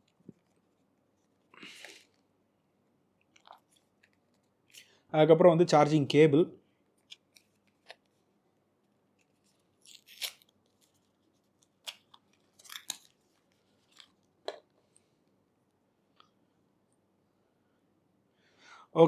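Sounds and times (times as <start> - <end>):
packaging crinkling and rustling: 9.2 - 14.7.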